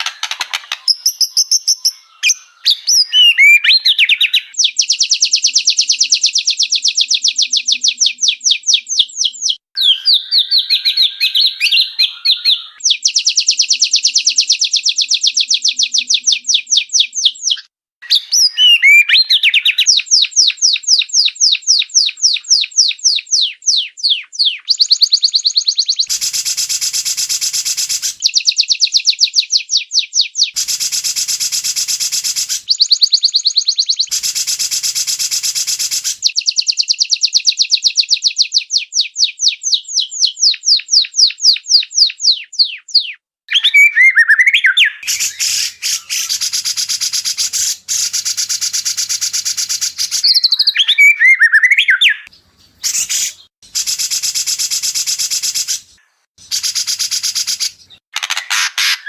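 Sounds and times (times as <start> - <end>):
bird song with whistled phrases: 0.0 - 59.0
bird harsh buzzy rattle: 58.2 - 59.0.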